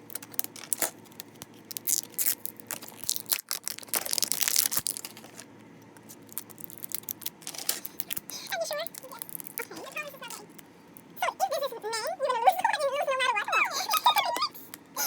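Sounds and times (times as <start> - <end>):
plastic wrapping crinkling: 0.0 - 10.6
wrapping tearing: 0.0 - 10.6.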